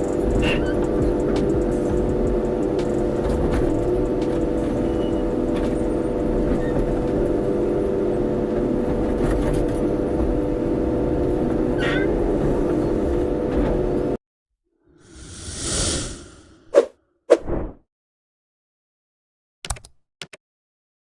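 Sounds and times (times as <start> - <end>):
excavator diesel engine running: 0.0 - 14.2.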